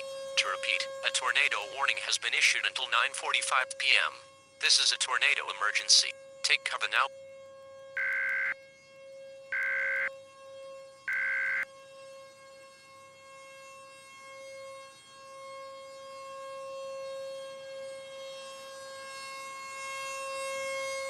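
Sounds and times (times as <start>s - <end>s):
civil defense siren: 0.0s - 21.0s
digital data tone bursts: 9.6s - 10.1s.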